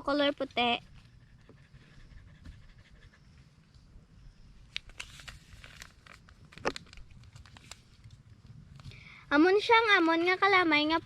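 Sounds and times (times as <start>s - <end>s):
packet crinkling: 4.7s - 8.2s.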